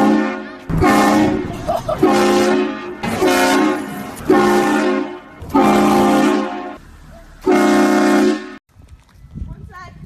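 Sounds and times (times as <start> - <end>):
air horn blasts: 0.0 - 6.8, 7.4 - 8.6.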